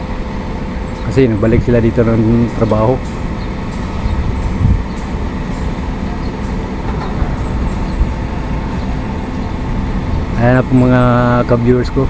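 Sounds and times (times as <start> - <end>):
construction machinery rumbling: 0.0 - 12.0
loud bump: 3.6 - 11.4.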